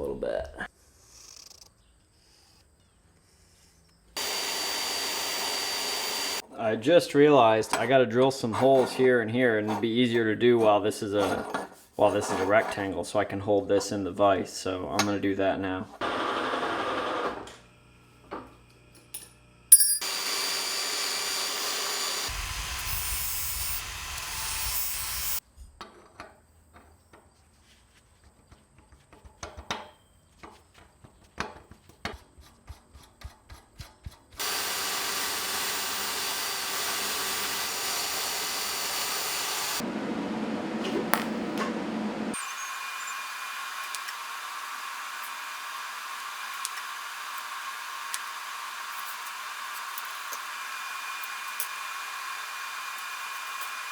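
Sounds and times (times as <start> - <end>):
electric drill boring steel: 4.2 - 6.4, 16.0 - 17.6, 20.0 - 25.4, 34.4 - 39.9, 42.3 - 53.9.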